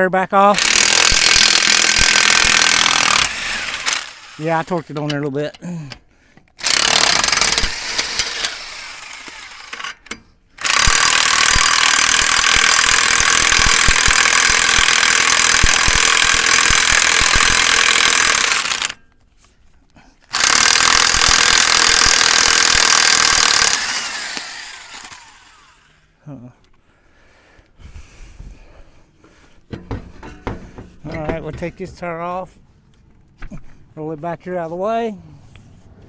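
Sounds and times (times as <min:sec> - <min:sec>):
impact wrench running: 0:00.6 - 0:04.9, 0:06.6 - 0:19.1, 0:20.3 - 0:26.1.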